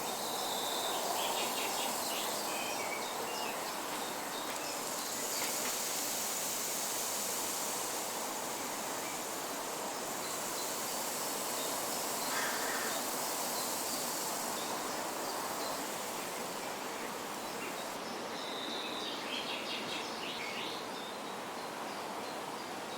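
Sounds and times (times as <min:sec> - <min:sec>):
high insect drone: 0:00.0 - 0:18.0
rain stick hiss: 0:00.0 - 0:18.0.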